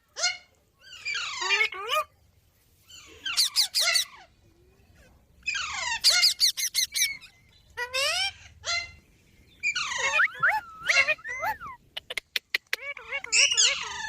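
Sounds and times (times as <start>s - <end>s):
parrot squawking: 3.2s - 4.3s, 5.5s - 9.0s, 9.6s - 14.0s.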